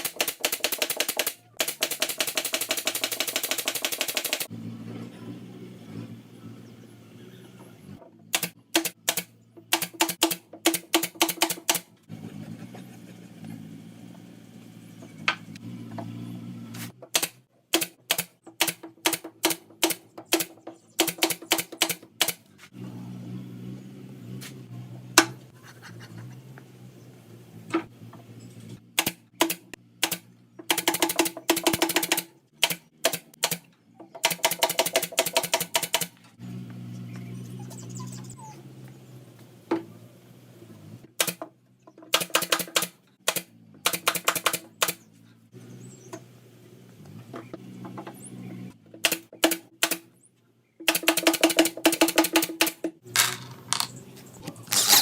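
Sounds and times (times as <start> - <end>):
sharp mechanical clicks: 0.0 - 4.5, 8.3 - 11.9, 17.1 - 22.5, 29.0 - 36.2, 41.2 - 41.4, 42.1 - 45.0, 49.0 - 50.1, 50.8 - 53.9, 54.7 - 55.0.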